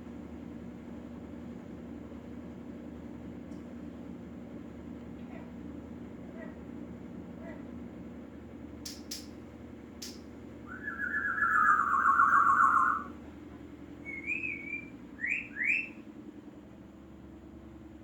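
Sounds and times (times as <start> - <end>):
sharp clicks: 8.8 - 9.4, 10.0 - 10.3
bird whistling: 10.6 - 13.2, 14.0 - 16.1.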